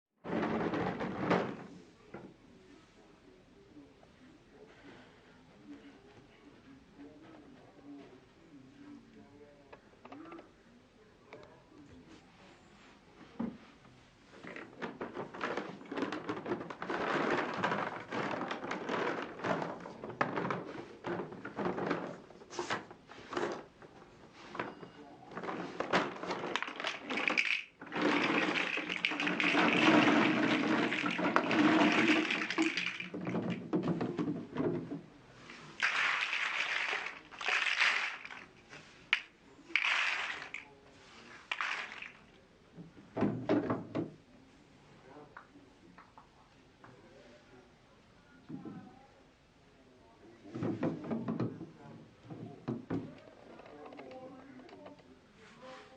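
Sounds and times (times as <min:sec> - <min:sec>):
marbles rolling down wooden run: 0:26.1 - 0:33.9, 0:35.8 - 0:38.5, 0:39.1 - 0:40.6, 0:41.4 - 0:42.2.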